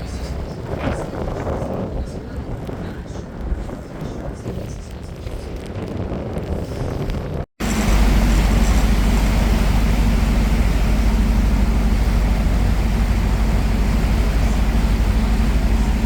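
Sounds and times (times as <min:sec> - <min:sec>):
boat engine rumbling: 0:07.1 - 0:16.0.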